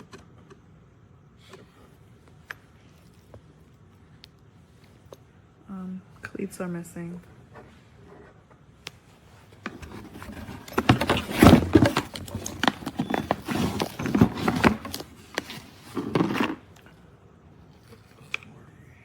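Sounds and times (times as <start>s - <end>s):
handling knocks and clatters: 9.5s - 17.0s
packaging rustling: 9.6s - 17.0s.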